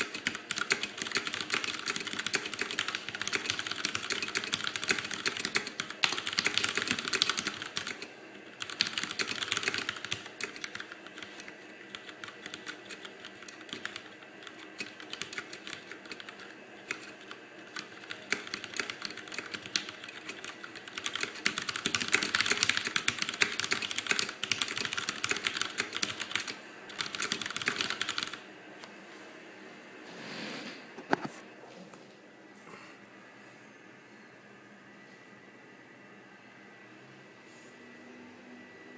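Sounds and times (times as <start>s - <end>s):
fast typing on mechanical keyboard: 0.0s - 28.4s.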